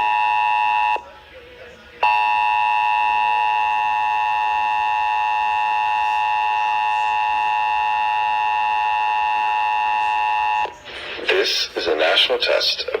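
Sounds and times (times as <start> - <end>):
steady two-tone alert signal: 2.0 - 10.7.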